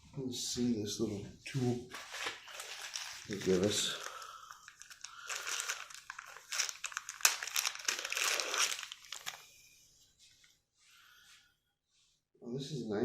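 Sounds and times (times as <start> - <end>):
plastic packaging crinkling: 1.9 - 9.5.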